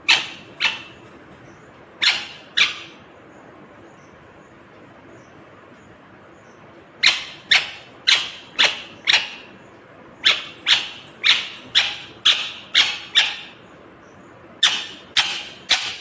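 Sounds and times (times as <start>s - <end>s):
parakeet screeching: 0.0s - 1.1s, 2.0s - 3.0s, 7.0s - 9.6s, 10.2s - 13.7s, 14.6s - 16.0s.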